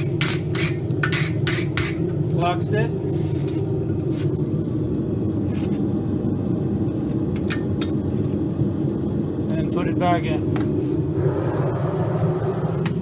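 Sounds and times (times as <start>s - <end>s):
forge low rush: 8.6s - 13.0s.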